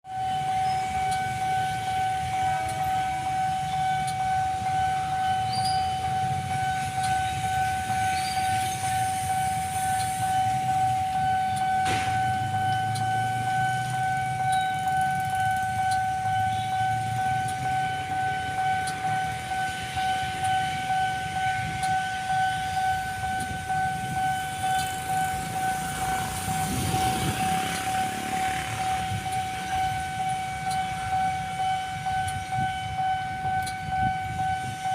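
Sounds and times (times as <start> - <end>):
level crossing alarm tone: 0.0 - 34.9.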